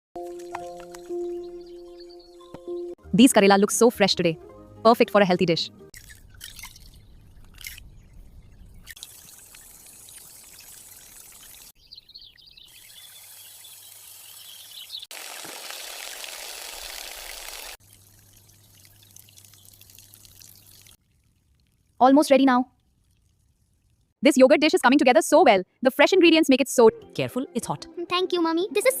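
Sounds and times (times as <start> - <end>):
water pouring and trickling: 5.9 - 24.2.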